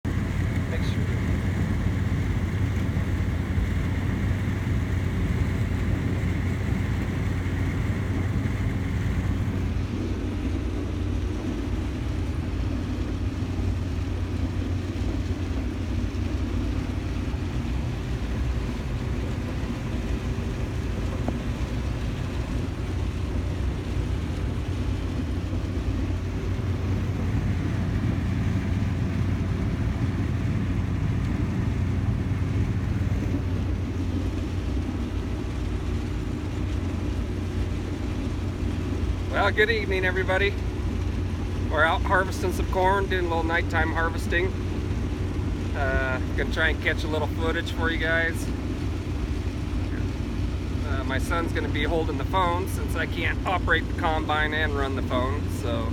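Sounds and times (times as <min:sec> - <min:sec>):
combine harvester drone: 0:00.0 - 0:55.9
high whine: 0:00.0 - 0:55.9.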